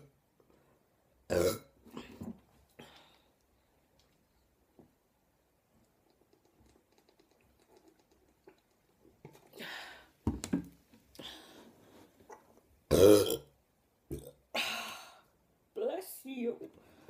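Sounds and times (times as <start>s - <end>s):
loud burp: 1.3s - 1.8s, 12.9s - 13.5s, 14.1s - 14.4s
breathing: 2.8s - 3.4s, 9.5s - 10.2s, 11.2s - 12.2s, 16.7s - 17.0s
faint clicks: 5.8s - 8.9s.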